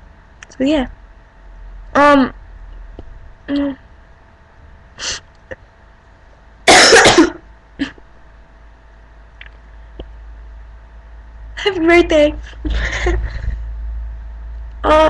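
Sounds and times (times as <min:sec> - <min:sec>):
girl coughing: 0:06.7 - 0:08.0.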